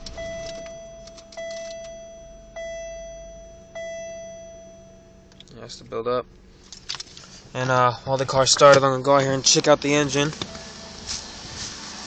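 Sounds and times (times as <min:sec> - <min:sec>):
electronic warning chime dinging: 0:00.0 - 0:05.4.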